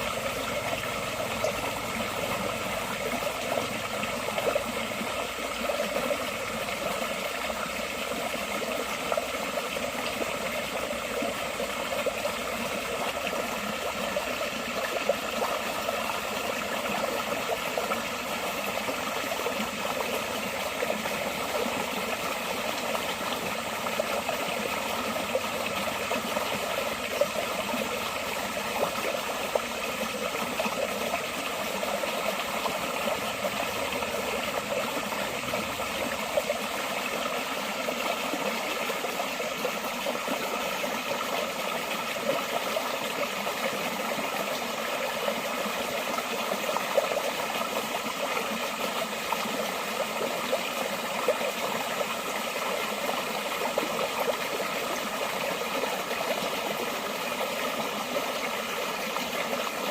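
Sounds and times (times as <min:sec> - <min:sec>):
stream flowing over rocks: 0:00.0 - 0:59.9.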